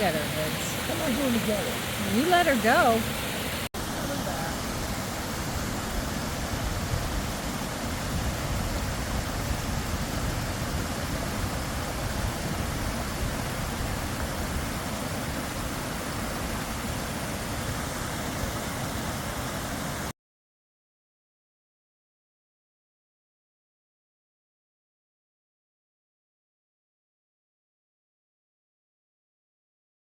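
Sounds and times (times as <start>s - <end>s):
waterfall rushing: 0.0s - 20.1s.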